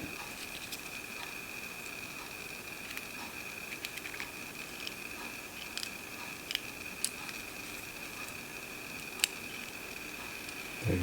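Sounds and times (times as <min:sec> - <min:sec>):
fan motor whining: 0:00.0 - 0:11.0
wires clicking and tapping: 0:00.1 - 0:10.8.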